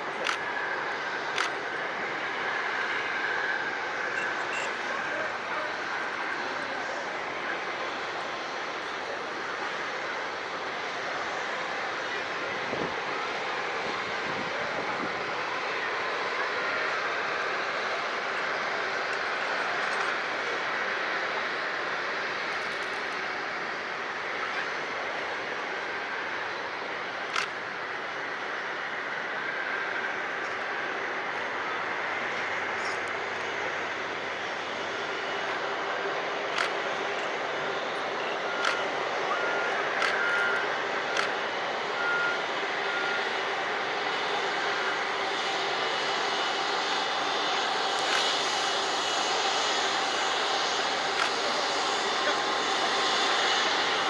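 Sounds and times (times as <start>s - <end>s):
jet engines running: 0.0s - 54.0s
sharp clicks: 0.2s - 0.4s, 1.3s - 1.6s, 27.3s - 27.6s, 36.5s - 37.4s, 38.2s - 39.1s, 39.9s - 41.4s, 51.1s - 51.4s
short high beeps: 4.1s - 4.9s
sharp click: 38.2s - 38.9s, 40.0s - 40.2s, 51.2s - 51.4s.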